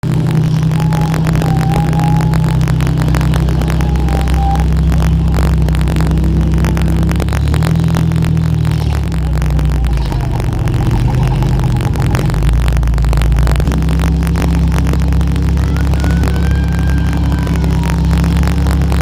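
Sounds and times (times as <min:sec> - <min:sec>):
car engine running: 0:00.0 - 0:19.0
crackling microphone static: 0:00.0 - 0:19.0.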